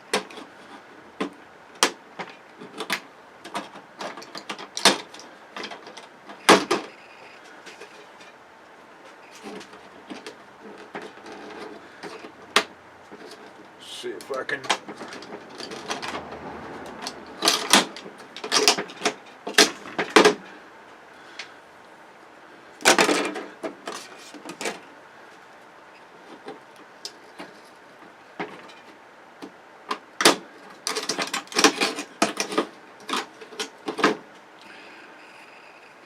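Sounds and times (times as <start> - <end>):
tv parts clicking and clattering: 0.0 - 7.0, 9.0 - 16.3, 17.0 - 20.5, 22.8 - 24.9, 29.8 - 34.3.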